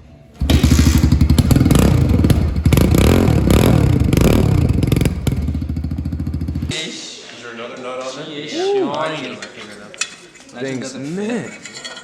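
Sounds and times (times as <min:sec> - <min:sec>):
small motorbike engine revving: 0:00.4 - 0:06.7.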